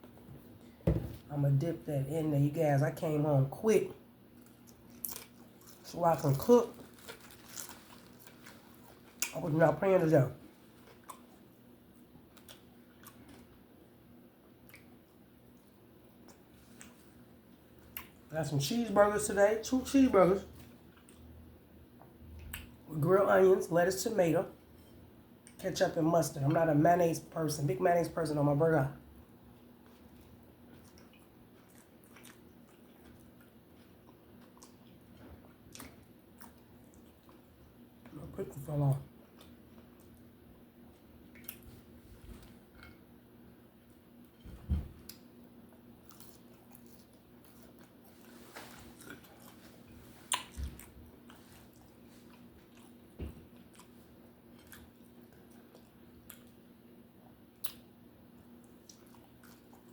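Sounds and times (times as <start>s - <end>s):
faint chewing: 10.5s - 13.6s, 14.6s - 18.3s, 20.5s - 21.4s, 29.5s - 38.2s, 39.0s - 43.2s, 43.8s - 59.9s
wet mouth clicks: 57.6s - 57.8s.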